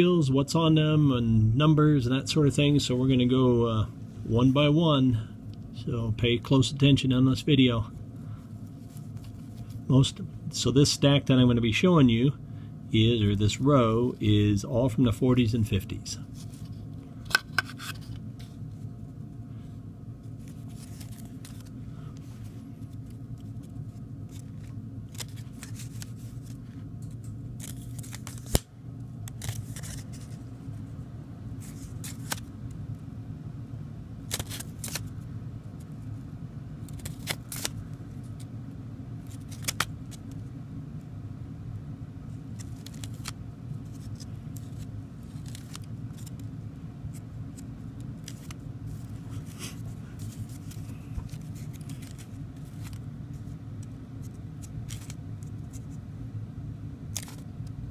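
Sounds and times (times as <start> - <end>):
steady low hum: 0.0 - 57.9
handling reels and paper envelopes: 5.9 - 12.3, 13.0 - 31.0, 31.6 - 33.0, 34.2 - 36.2, 36.8 - 38.5, 39.2 - 40.5, 42.2 - 56.0, 57.1 - 57.9
paper rustling: 20.3 - 28.6, 29.2 - 30.5, 31.6 - 32.5, 42.6 - 46.5, 47.1 - 55.9.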